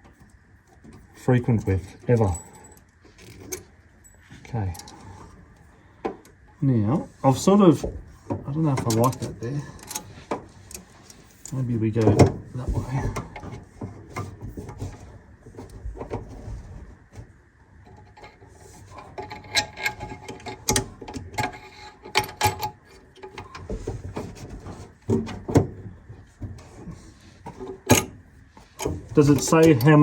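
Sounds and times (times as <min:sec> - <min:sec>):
clicks and knocks of hand work: 0:17.8 - 0:30.0.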